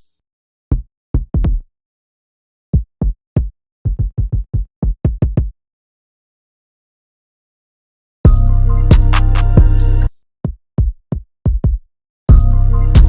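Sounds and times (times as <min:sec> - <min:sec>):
electronic bass and kick hits: 0:08.3 - 0:10.1, 0:12.3 - 0:13.0.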